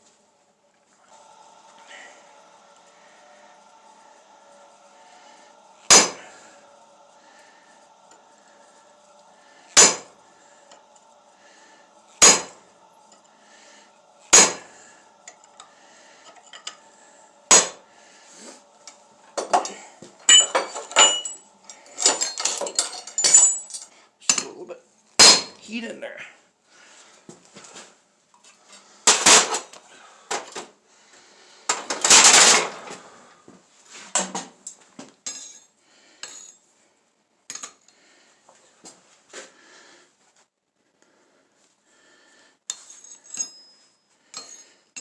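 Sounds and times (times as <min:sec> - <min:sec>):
faint steady hum: 0:00.0 - 0:34.0
hammer striking steel on anvil: 0:05.8 - 0:06.3, 0:09.7 - 0:10.2, 0:12.2 - 0:12.6, 0:14.3 - 0:14.8, 0:17.5 - 0:17.8, 0:20.3 - 0:21.4, 0:25.2 - 0:25.6, 0:43.3 - 0:43.8.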